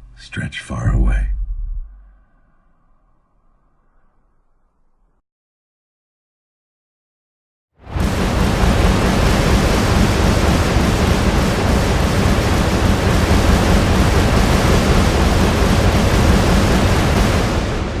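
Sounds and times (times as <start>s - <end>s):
loud rushing noise: 7.8s - 18.0s.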